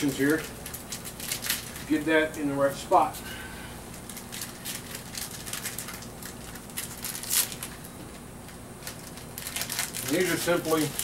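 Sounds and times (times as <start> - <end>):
small parts clicking and rustling: 0.0 - 1.9, 3.9 - 7.8, 8.8 - 11.0.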